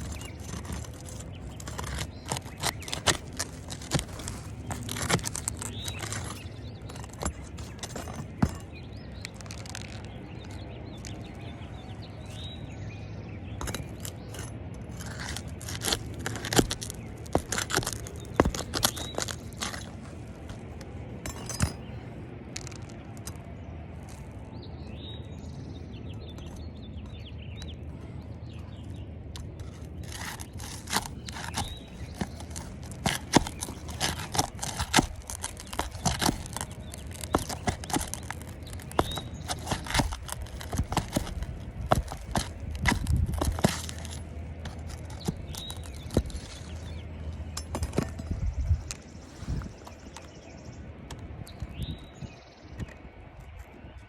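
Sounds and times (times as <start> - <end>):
scraper blade scraping shingles: 0.0 - 11.2, 13.6 - 22.0, 29.4 - 48.3.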